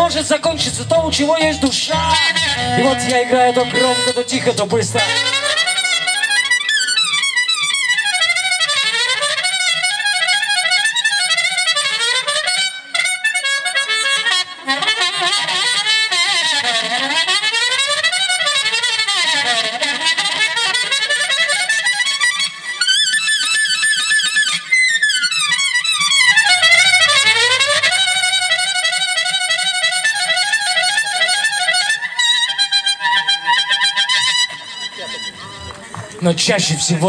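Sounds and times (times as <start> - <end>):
live blues instrumental: 0.0 - 37.0.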